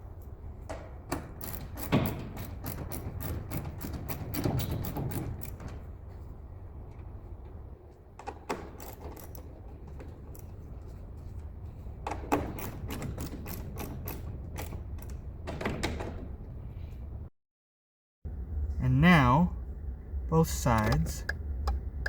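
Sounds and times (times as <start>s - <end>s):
clicking and clattering of hand work: 0.7s - 5.8s, 8.2s - 10.9s, 12.0s - 16.1s
steady low hum: 18.3s - 22.0s.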